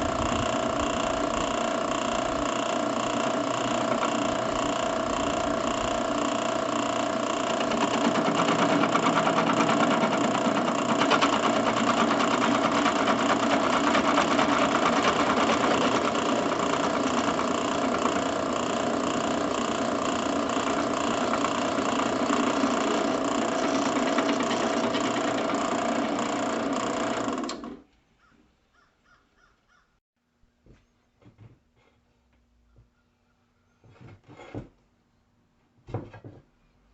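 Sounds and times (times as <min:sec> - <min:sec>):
drill press motor whining: 0:00.0 - 0:27.8.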